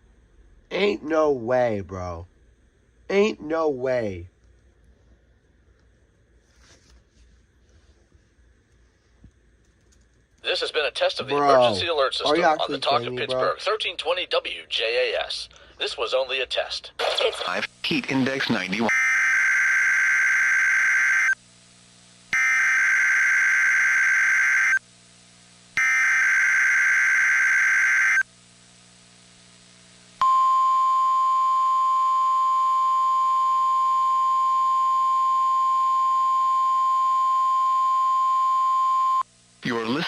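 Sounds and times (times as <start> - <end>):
steady high warning alarm tone: 18.9 - 21.4, 22.4 - 24.8, 25.8 - 28.2.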